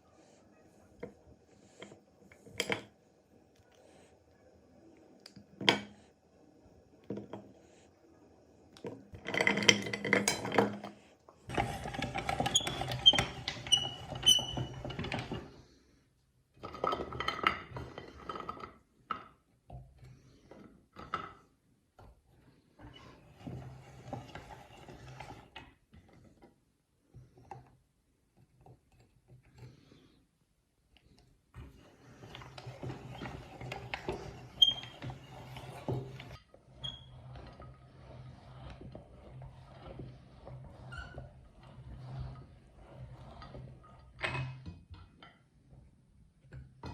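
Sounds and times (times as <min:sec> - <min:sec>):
meat grinder grinding soap: 0:08.8 - 0:15.6, 0:31.0 - 0:45.0.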